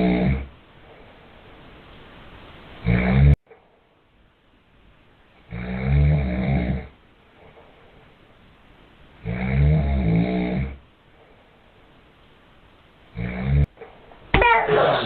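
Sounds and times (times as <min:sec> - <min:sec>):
man snoring loudly: 0:00.0 - 0:00.5, 0:02.8 - 0:03.4, 0:05.5 - 0:06.9, 0:09.2 - 0:10.8, 0:13.2 - 0:13.7.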